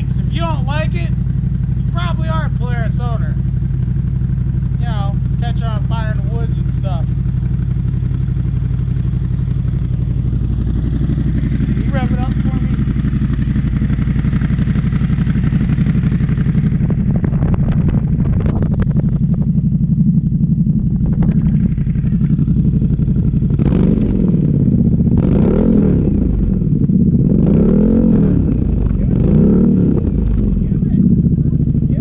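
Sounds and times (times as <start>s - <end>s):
motorcycle engine idling: 0.0s - 32.0s
engine revving blips: 25.1s - 30.8s.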